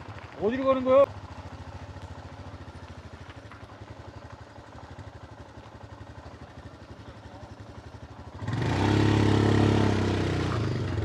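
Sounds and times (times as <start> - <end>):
motorcycle engine idling low: 0.0 - 8.5.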